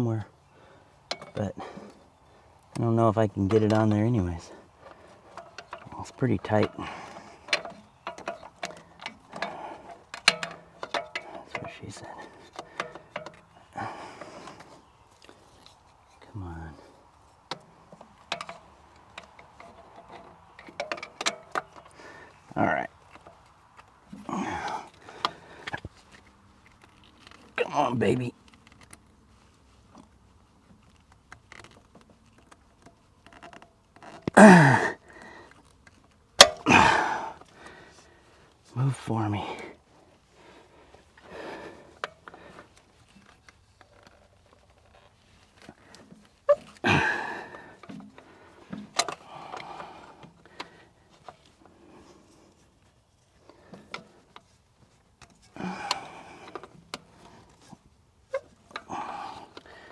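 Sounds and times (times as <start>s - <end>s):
pliers clicking and scraping on metal: 6.5s - 11.8s
man grunting with effort: 24.3s - 24.9s, 34.4s - 35.0s, 36.6s - 37.4s, 46.8s - 47.5s, 55.6s - 56.3s, 58.9s - 59.5s.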